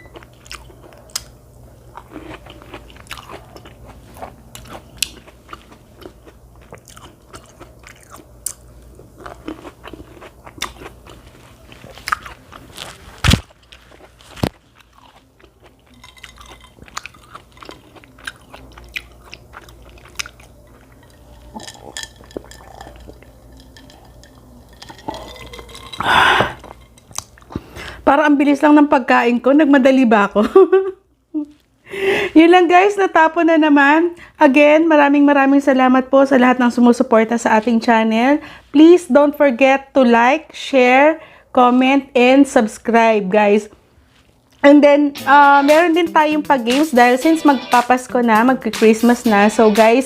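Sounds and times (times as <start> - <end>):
crunching and chewing: 0.0 - 27.9.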